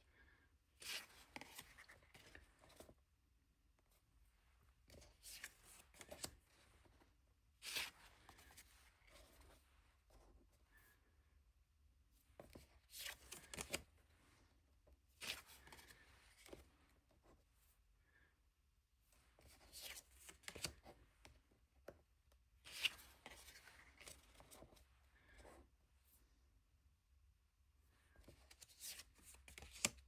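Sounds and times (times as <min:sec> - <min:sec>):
cards sliding and flicking: 0:04.9 - 0:06.4, 0:07.6 - 0:09.2, 0:13.0 - 0:13.8, 0:19.7 - 0:20.8, 0:28.5 - 0:30.0.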